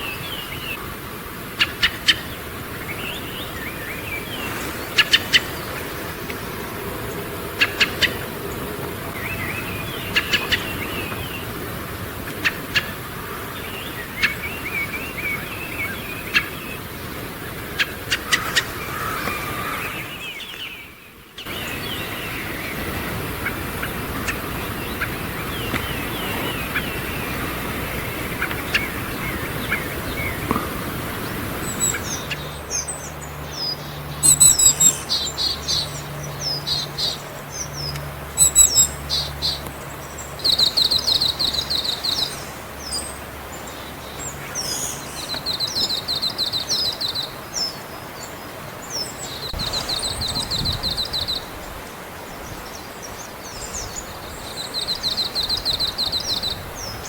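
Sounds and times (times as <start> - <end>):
songbirds chirping and twittering: 0.0 - 57.0
high rapid bird calls: 1.6 - 11.5, 17.5 - 47.8.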